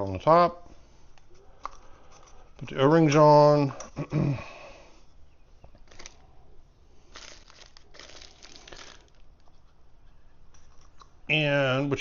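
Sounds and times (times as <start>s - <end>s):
crinkling and rustling of parts: 1.1s - 2.9s, 5.7s - 6.3s, 7.0s - 11.2s.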